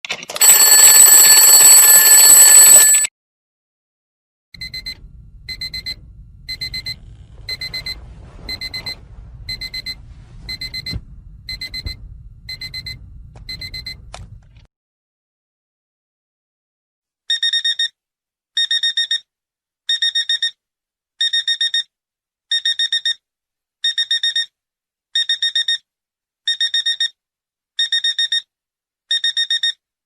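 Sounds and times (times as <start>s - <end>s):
alarm clock ringing: 0.4s - 3.1s
quick short alarm beeps: 0.4s - 3.1s.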